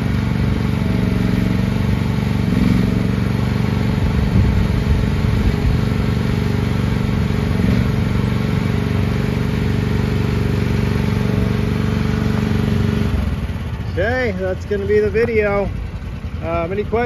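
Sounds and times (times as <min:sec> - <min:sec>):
excavator engine running: 0:00.0 - 0:17.0.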